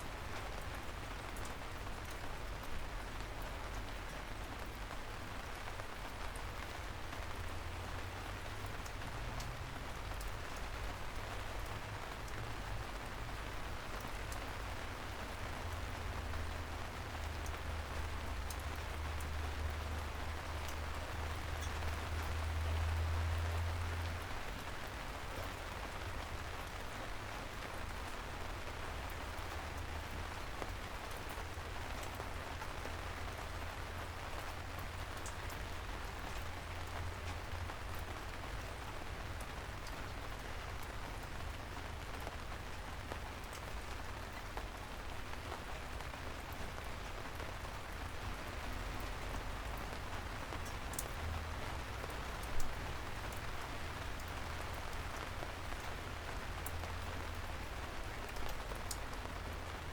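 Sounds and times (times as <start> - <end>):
soft rain on a street: 0.0 - 59.9.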